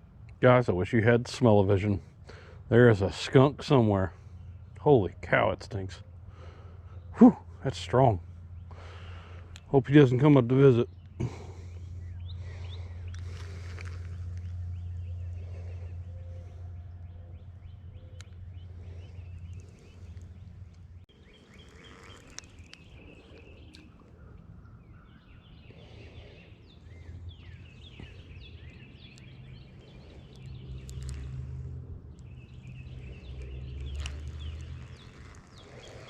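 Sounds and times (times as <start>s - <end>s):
small birds chirping and calling: 2.2s - 36.0s
steady low rumble: 6.1s - 21.2s
sharp clicks: 30.2s - 35.7s.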